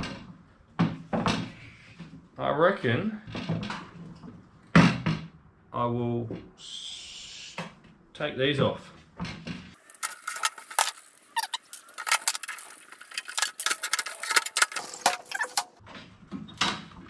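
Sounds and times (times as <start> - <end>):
metal parts clinking and rattling: 9.7 - 15.8.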